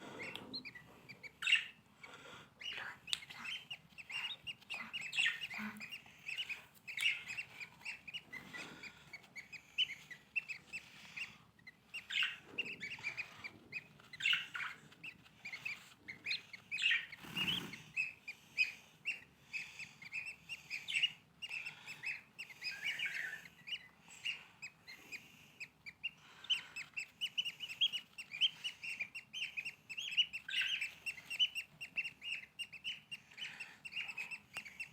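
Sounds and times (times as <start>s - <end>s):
birds chirping rapidly: 0.0s - 34.9s.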